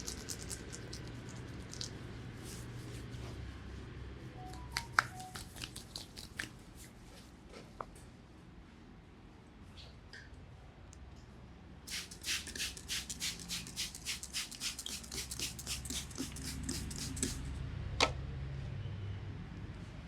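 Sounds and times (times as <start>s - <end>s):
hands rubbing an oiled head: 4.8s - 6.6s, 11.9s - 17.4s.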